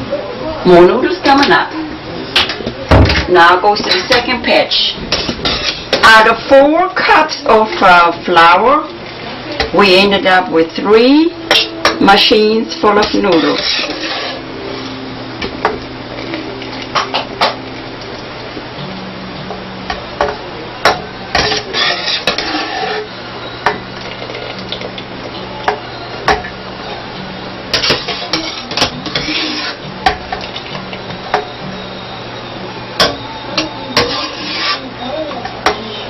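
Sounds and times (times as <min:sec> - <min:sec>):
metal utensils clinking on pots: 0:11.0 - 0:14.4, 0:20.2 - 0:25.0, 0:27.7 - 0:31.5, 0:33.0 - 0:35.8.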